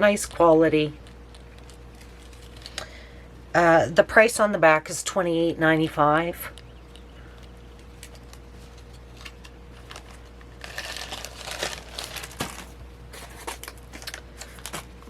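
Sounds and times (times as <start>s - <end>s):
packaging crinkling: 1.0s - 2.9s, 7.8s - 15.0s.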